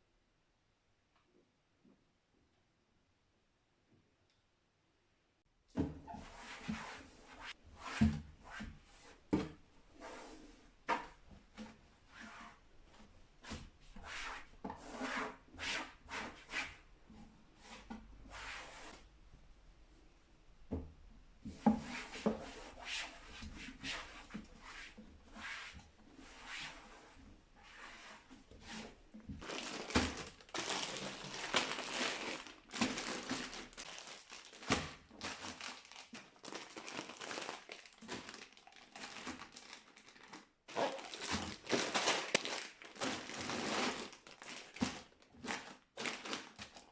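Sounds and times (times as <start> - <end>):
packaging crinkling: 29.4 - 46.9.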